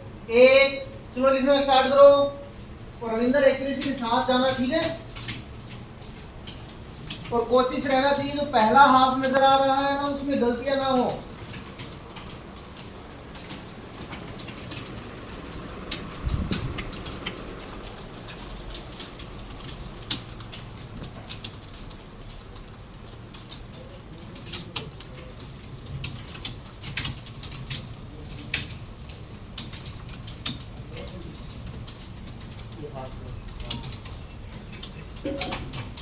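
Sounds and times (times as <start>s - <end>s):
keyboards clicking: 2.8s - 36.0s.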